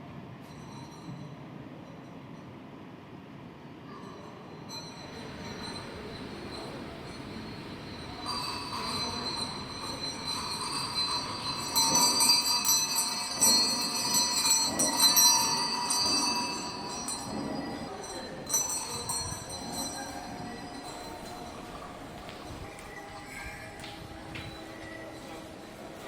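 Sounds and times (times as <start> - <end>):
cowbell clanking: 4.7 - 23.8.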